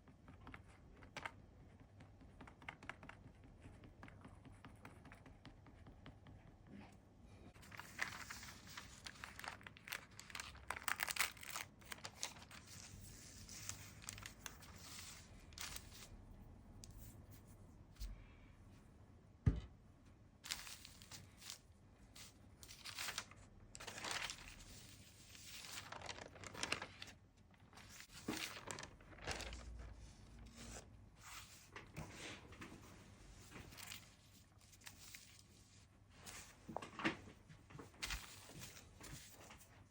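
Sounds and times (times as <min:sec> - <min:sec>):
paper rustling and crinkling: 0:07.6 - 0:16.2, 0:20.4 - 0:39.9.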